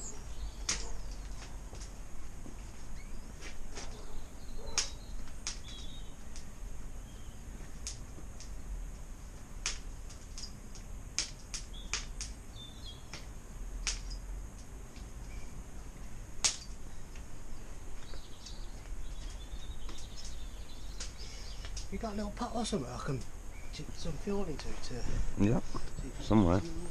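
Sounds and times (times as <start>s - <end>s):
faint bird chirps: 3.0s - 3.3s, 3.9s - 6.3s, 18.0s - 21.7s.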